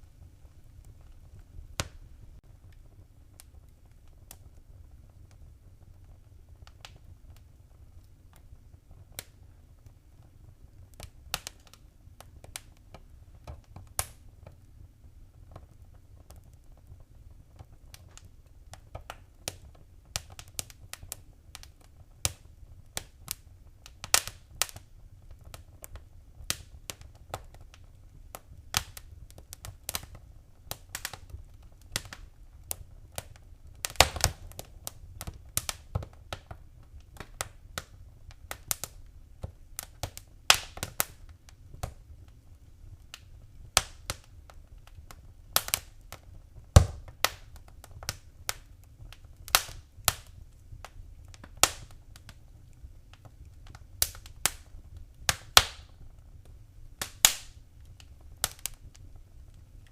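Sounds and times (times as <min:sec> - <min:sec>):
fire crackling and popping: 0:00.0 - 0:59.9.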